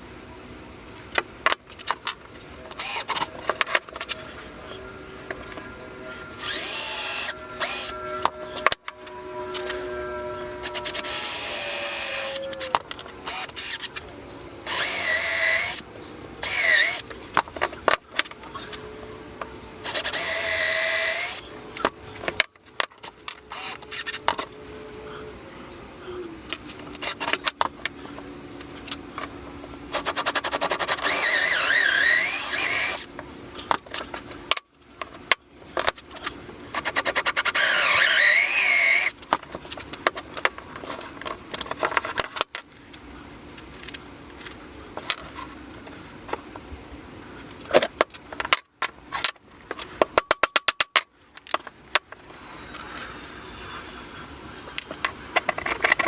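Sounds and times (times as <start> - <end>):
power drill whining: 2.6 - 14.0, 14.6 - 15.8, 16.4 - 17.2, 18.4 - 22.2, 23.4 - 25.2, 31.0 - 33.1, 37.5 - 39.2.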